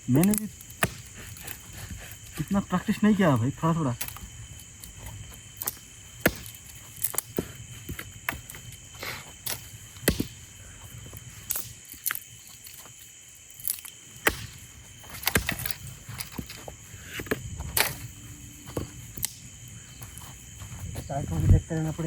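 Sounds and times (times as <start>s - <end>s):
sharp knocks and cracks: 0.1s - 2.5s, 4.9s - 10.5s, 11.4s - 12.9s, 13.6s - 18.1s, 18.7s - 19.5s.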